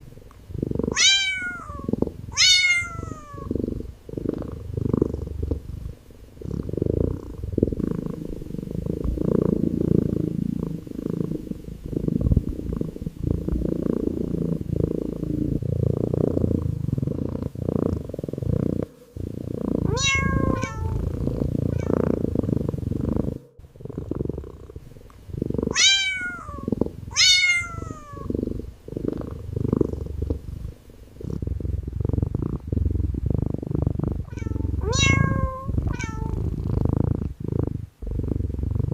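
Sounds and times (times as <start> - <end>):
kitten purring: 0.0 - 38.9
kitten meowing: 0.9 - 3.5, 19.9 - 21.0, 25.7 - 28.3, 34.3 - 36.4.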